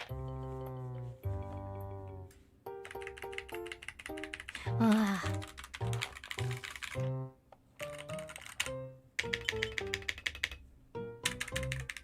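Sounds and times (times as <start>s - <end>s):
background music with melody: 0.0s - 12.0s
keyboard typing clicks: 2.8s - 7.2s, 7.8s - 10.6s, 11.2s - 12.0s.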